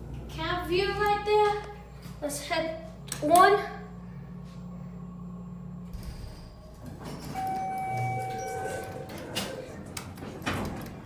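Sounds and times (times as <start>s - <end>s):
steady elevator tone: 0.0s - 11.0s
elevator doors sliding shut: 5.9s - 11.0s.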